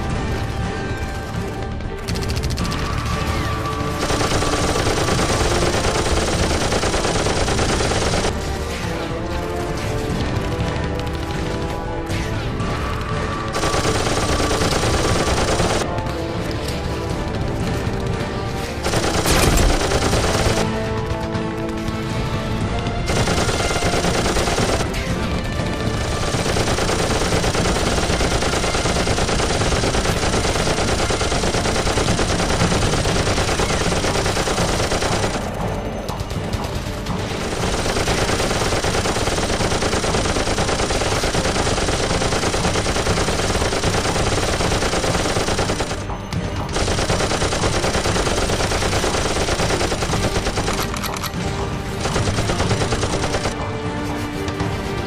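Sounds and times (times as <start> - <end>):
heavy machine-gun fire: 2.1 - 8.5, 10.1 - 15.9, 18.8 - 21.8, 23.0 - 35.6, 37.4 - 46.1, 46.7 - 51.3, 52.0 - 53.6.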